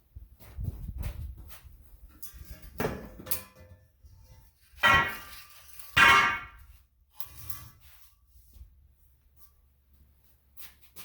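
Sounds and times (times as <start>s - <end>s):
metal pipe clanging: 2.1s - 7.8s.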